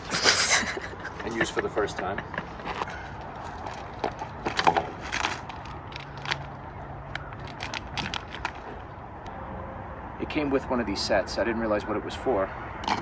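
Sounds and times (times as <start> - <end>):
crinkly plastic rustling: 0.0 - 6.6, 7.3 - 8.9.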